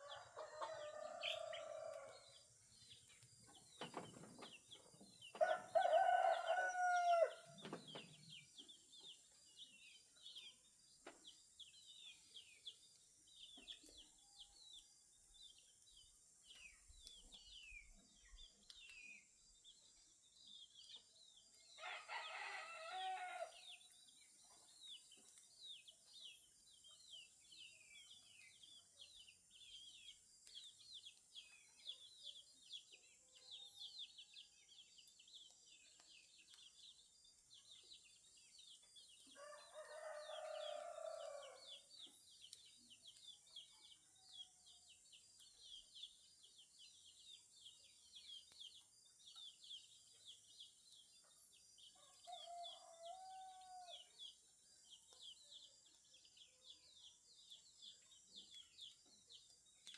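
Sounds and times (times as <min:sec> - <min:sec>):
songbirds chirping: 0:00.0 - 0:59.9
rooster crowing: 0:00.1 - 0:02.1, 0:05.4 - 0:07.6, 0:21.8 - 0:23.5, 0:39.4 - 0:41.6, 0:52.3 - 0:54.0.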